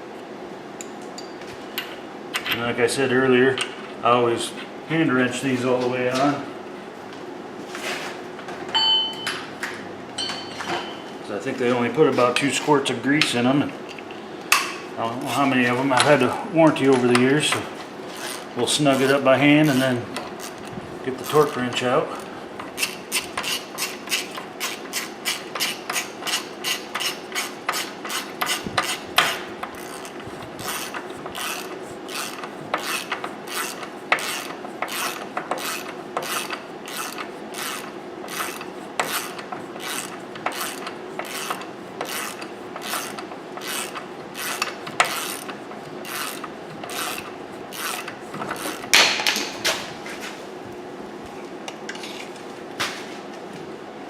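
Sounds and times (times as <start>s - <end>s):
ratchet wrench clicking: 22.8s - 49.4s.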